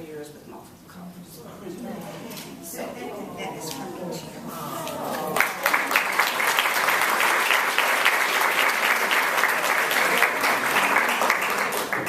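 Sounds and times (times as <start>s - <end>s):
audience applauding: 5.1s - 12.0s.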